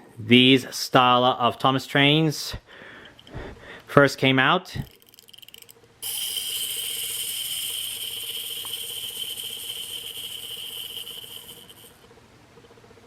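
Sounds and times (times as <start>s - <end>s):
clockwork toy motor whirring: 4.8s - 12.1s.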